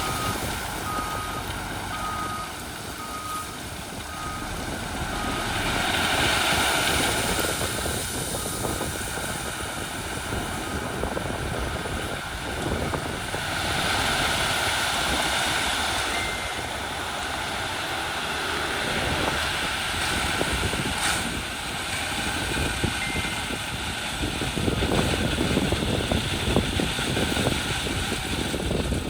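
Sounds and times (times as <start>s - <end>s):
reversing beeper: 0.0s - 5.6s, 16.1s - 16.8s
diesel earthmoving machinery: 0.0s - 29.0s.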